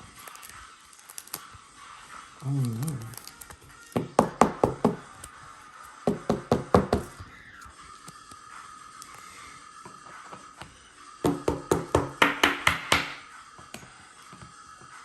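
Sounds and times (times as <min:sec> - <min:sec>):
taps on hard surface: 0:04.0 - 0:05.0, 0:06.1 - 0:07.1, 0:11.3 - 0:13.8.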